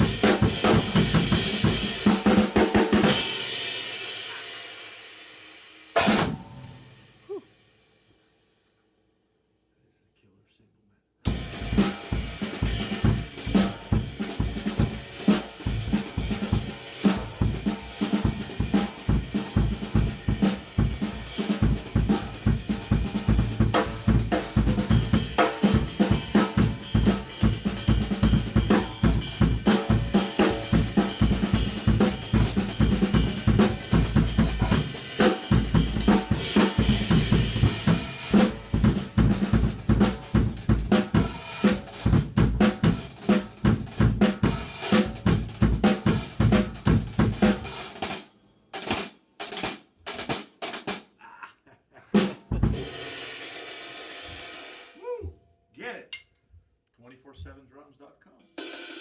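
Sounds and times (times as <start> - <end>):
drum kit groove: 0.0 - 7.5, 11.3 - 55.4, 58.4 - 59.0.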